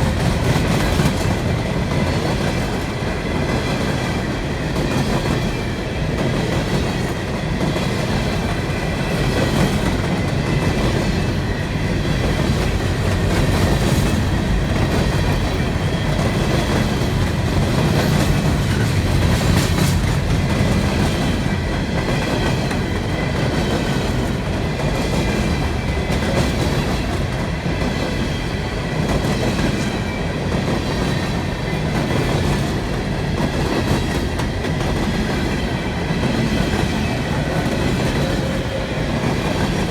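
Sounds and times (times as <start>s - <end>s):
train wheels clattering on rails: 0.0s - 39.9s.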